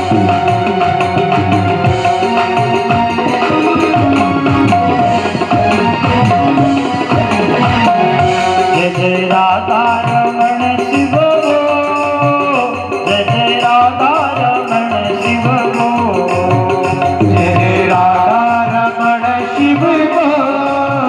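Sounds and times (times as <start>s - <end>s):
hand drum rhythm: 0.0s - 21.0s
gliding sustained melody: 0.8s - 9.0s.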